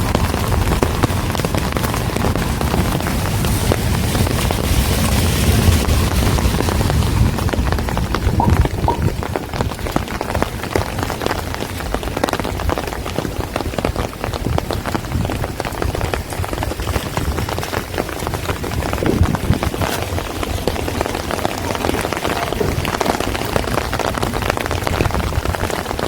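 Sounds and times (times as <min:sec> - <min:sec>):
rain pattering on hard surfaces: 0:00.0 - 0:26.0
low rumble: 0:02.2 - 0:10.4.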